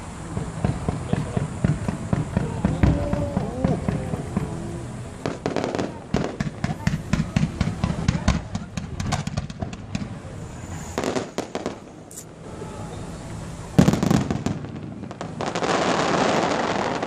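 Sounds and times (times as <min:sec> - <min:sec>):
crackling hiss of fireworks: 0:00.0 - 0:17.0
firework cracks and pops: 0:05.2 - 0:10.4, 0:11.0 - 0:12.3, 0:13.8 - 0:17.0.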